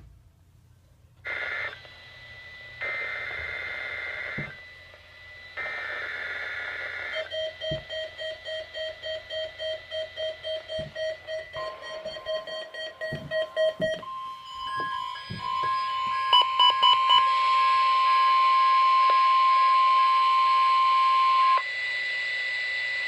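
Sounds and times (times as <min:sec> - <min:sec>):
steady warning alarm tone: 0:01.3 - 0:23.0
rapidly pulsing electronic beep: 0:06.1 - 0:21.6
higher steady tone: 0:10.8 - 0:20.0.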